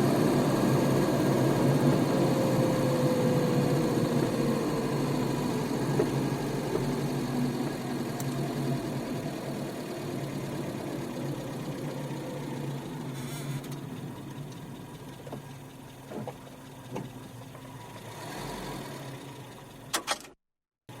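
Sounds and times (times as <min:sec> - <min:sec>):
car engine idling: 0:00.0 - 0:20.0.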